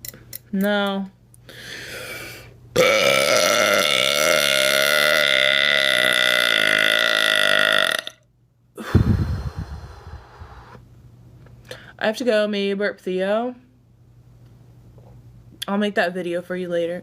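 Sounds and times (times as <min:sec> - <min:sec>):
woman belching: 0:02.8 - 0:08.2
low muffled rumble: 0:08.8 - 0:10.9.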